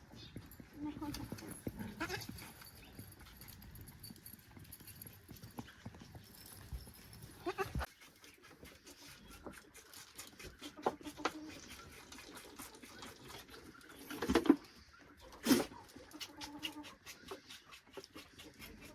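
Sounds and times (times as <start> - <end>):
farmyard background: 0.0 - 18.9.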